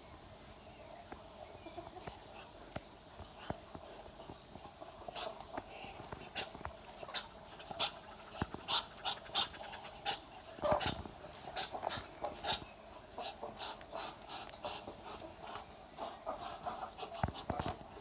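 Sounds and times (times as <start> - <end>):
duck hissing: 13.2 - 17.2.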